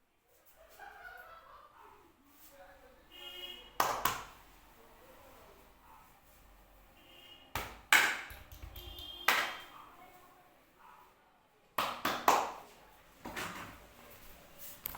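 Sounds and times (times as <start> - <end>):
hand strikes massage: 7.5 - 9.6.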